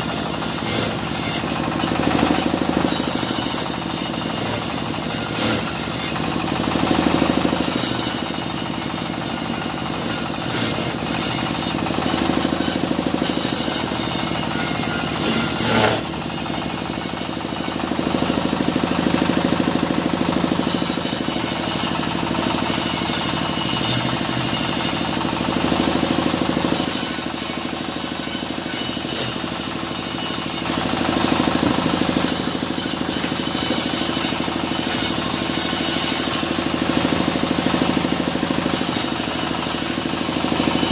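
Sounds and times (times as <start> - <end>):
saw cutting wood: 0.0 - 40.9
sawmill machine drone: 0.0 - 40.9.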